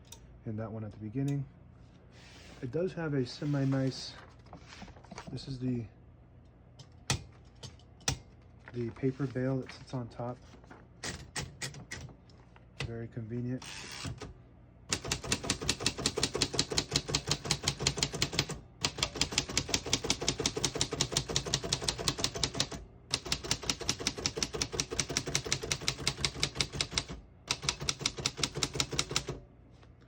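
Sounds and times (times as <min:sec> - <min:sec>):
typewriter keystrokes clacking: 0:14.9 - 0:29.4.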